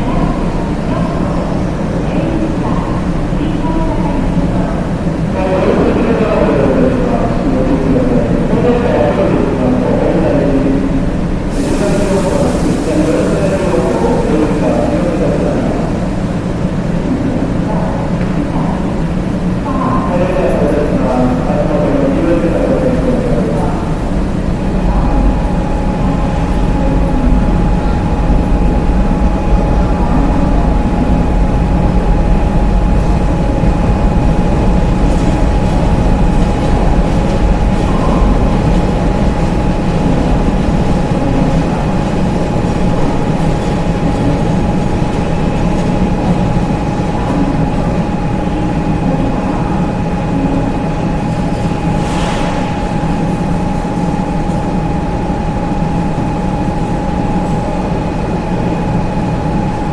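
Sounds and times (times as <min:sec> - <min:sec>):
steady whine: 0:00.0 - 0:52.0
train rumbling: 0:00.0 - 0:59.9.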